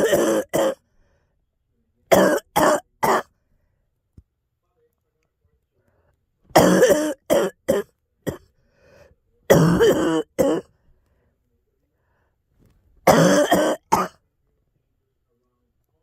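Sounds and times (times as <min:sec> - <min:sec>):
girl coughing: 0:00.0 - 0:00.8, 0:02.1 - 0:03.3, 0:06.6 - 0:08.4, 0:09.5 - 0:10.7, 0:13.1 - 0:14.2.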